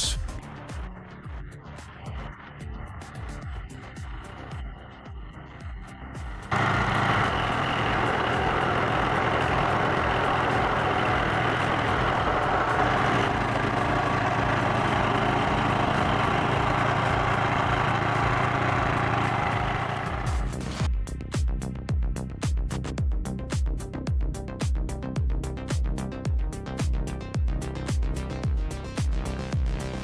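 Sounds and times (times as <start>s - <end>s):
heavy machine engine under load: 6.5s - 20.8s.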